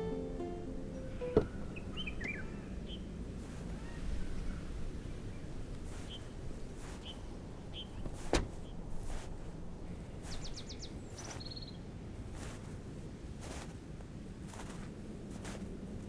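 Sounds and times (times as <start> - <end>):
small birds chirping: 0.0 - 8.8, 9.9 - 11.8
low rumble of wind: 0.6 - 16.0.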